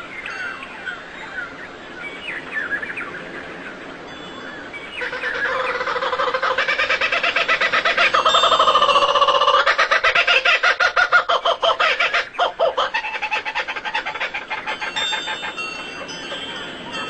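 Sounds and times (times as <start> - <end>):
rapidly pulsing bird call: 4.6 - 17.0.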